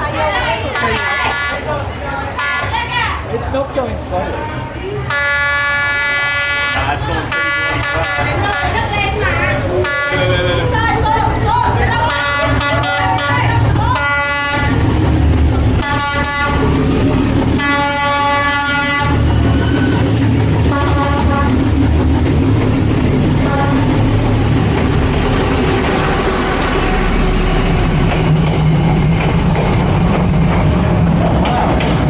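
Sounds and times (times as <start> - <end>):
train rumbling past: 0.0 - 32.0
train horn blasts: 2.4 - 2.8, 5.1 - 8.8, 9.8 - 10.3, 12.0 - 14.8, 15.8 - 16.7, 17.6 - 19.2, 20.6 - 21.7, 23.4 - 24.1.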